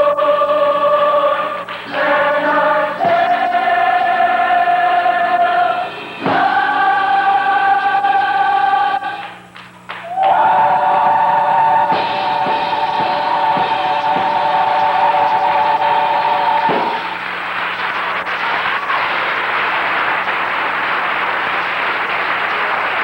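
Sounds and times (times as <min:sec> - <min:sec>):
choir singing held chords: 0:00.0 - 0:17.6.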